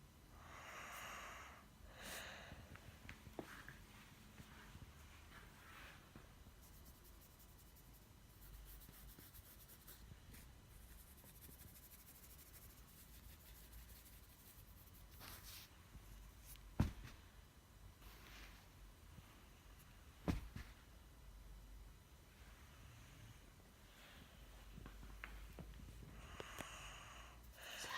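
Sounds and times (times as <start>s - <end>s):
soft snoring breaths: 0.3s - 3.8s, 25.9s - 27.9s.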